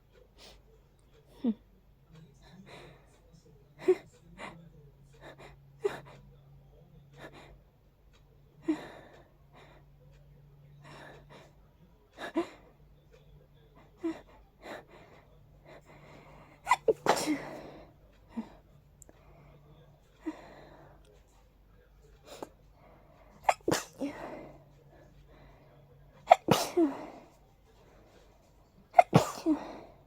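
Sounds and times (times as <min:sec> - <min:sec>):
person sneezing: 0:16.7 - 0:17.6, 0:23.5 - 0:24.4, 0:26.3 - 0:27.2, 0:29.0 - 0:29.8.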